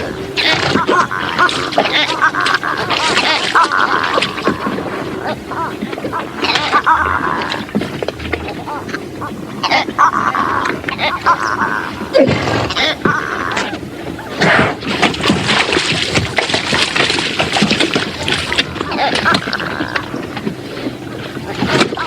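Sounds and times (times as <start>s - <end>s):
zebra braying: 0.0s - 14.9s, 17.4s - 22.0s
background clatter: 9.6s - 22.0s.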